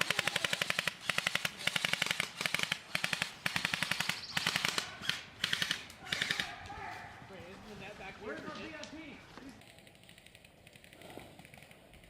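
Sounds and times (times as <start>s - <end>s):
airsoft gun bursts: 0.0s - 6.6s.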